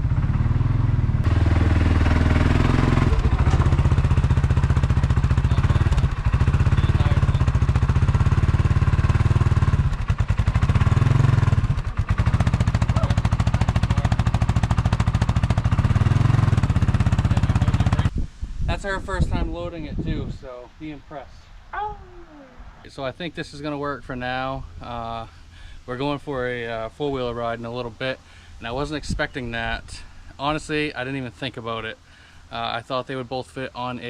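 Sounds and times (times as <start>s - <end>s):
atv engine revving: 0.0s - 18.1s.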